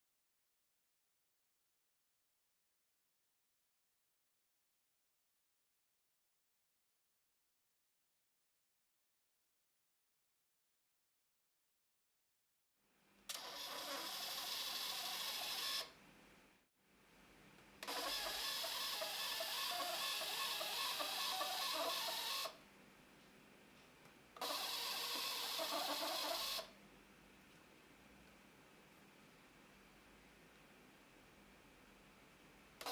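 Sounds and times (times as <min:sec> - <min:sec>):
receipt printer printing: 0:13.3 - 0:15.9, 0:17.8 - 0:22.6, 0:24.4 - 0:26.7.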